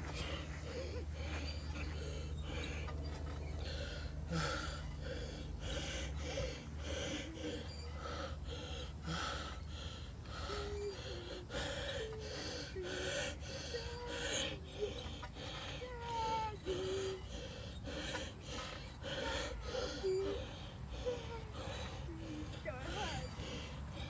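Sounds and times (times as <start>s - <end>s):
low steady hum: 0.0s - 24.0s
person breathing hard: 0.0s - 24.0s.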